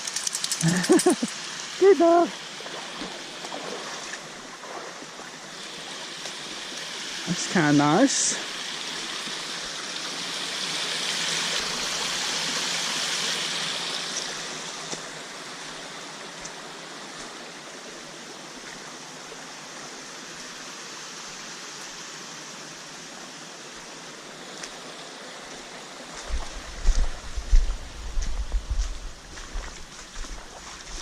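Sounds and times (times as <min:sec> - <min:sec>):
creek water running over rocks: 0:00.0 - 0:31.0.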